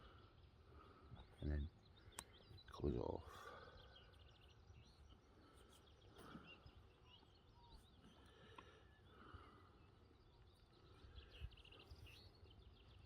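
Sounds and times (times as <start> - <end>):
faint bird chirps: 0.0 - 13.0.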